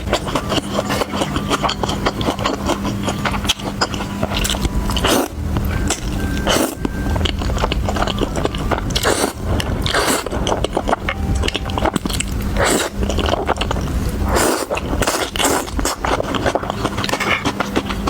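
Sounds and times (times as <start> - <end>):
person biting and chewing food: 0.0 - 18.0.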